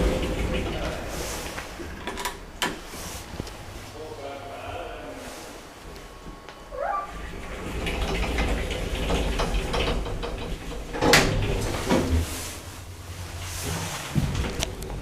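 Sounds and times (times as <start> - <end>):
lift doors sliding and clattering: 0.0 - 15.0.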